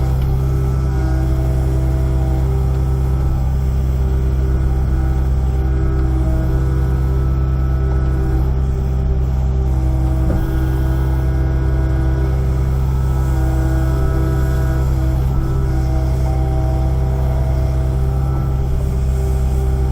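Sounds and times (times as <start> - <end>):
excavator diesel engine running: 0.0 - 19.9
high steady machine tones: 0.0 - 19.9.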